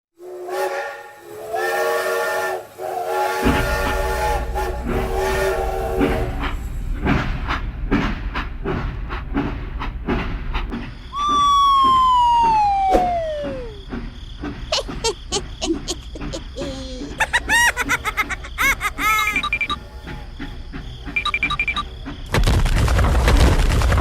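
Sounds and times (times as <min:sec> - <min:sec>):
low engine rumble: 0:03.4 - 0:22.3
multi-pitch whistle: 0:11.1 - 0:13.8
whistle gliding down in pitch: 0:11.1 - 0:13.8.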